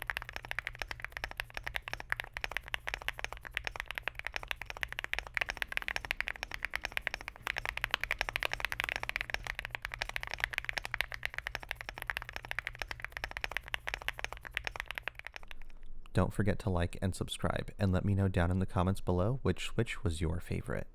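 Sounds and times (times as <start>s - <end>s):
mechanical keyboard typing: 0.0s - 15.8s.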